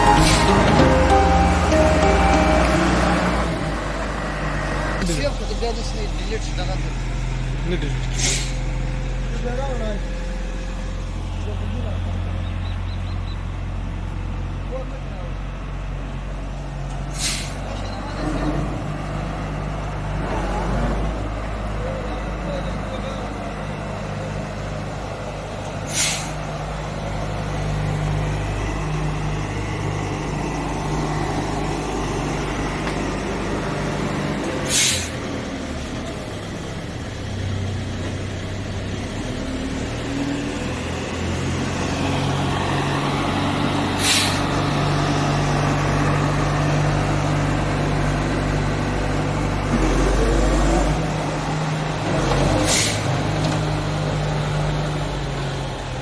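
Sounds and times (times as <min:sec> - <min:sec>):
hydraulics whining: 0:00.0 - 0:05.0
excavator diesel engine: 0:00.0 - 0:56.0.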